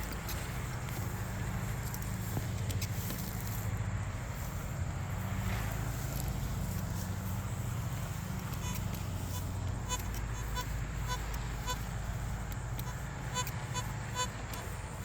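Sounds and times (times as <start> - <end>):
steady low hum: 0.0 - 15.0
metal detector beeps: 8.4 - 15.0.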